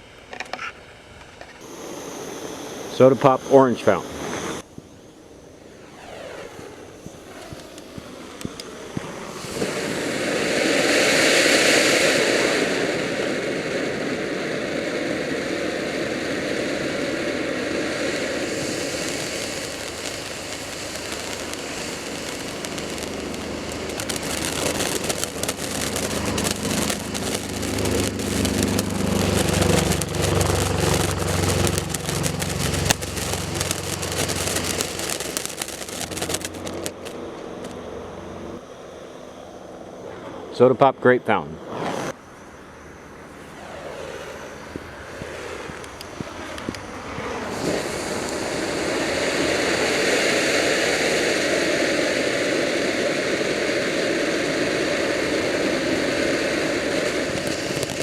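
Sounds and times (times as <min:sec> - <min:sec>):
fountain firework hissing: 0:01.6 - 0:37.7, 0:43.4 - 0:58.0
firework crackling: 0:04.4 - 0:37.8, 0:45.2 - 0:58.0.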